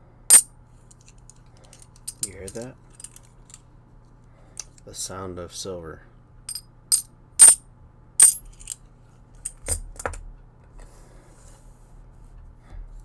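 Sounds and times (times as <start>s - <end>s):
coins clinking: 2.1s - 3.2s, 6.9s - 7.6s, 8.2s - 8.8s, 9.5s - 9.8s.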